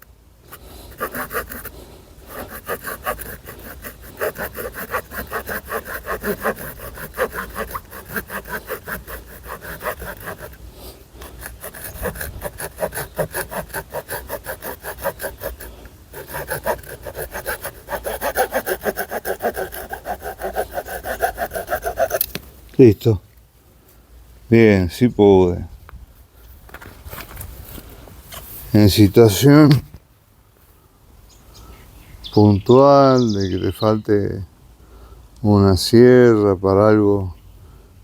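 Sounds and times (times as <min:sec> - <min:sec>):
saw blade sawing wood: 0:00.5 - 0:10.6, 0:11.2 - 0:22.4.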